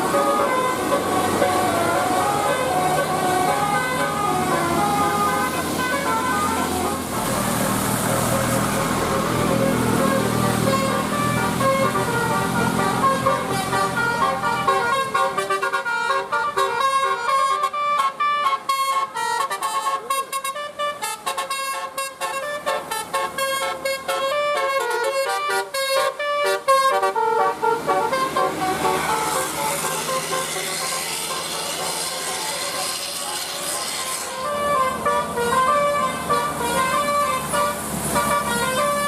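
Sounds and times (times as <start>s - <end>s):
heavy rain hiss: 0.0s - 15.8s, 27.0s - 39.0s
multi-tone musical bus horn: 0.0s - 39.0s.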